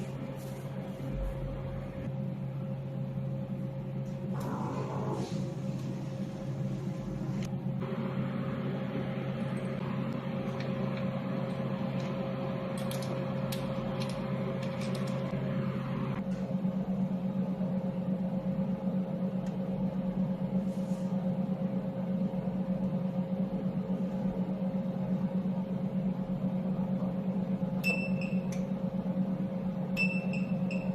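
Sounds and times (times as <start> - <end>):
welding machine humming: 4.0 - 16.2.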